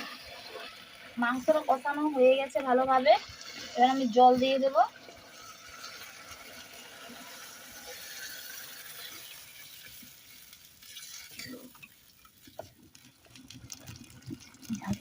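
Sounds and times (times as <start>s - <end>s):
water hissing in hot pot: 0.0s - 15.0s.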